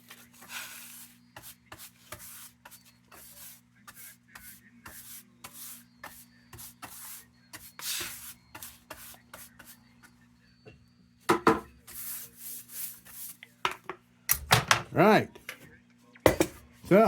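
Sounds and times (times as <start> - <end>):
scraping and brushing strokes: 0.0 - 9.8, 11.8 - 13.5.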